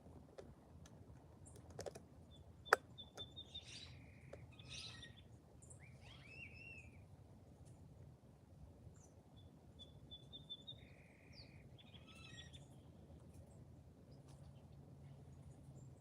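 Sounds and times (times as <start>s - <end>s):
low background hum: 0.0s - 16.0s.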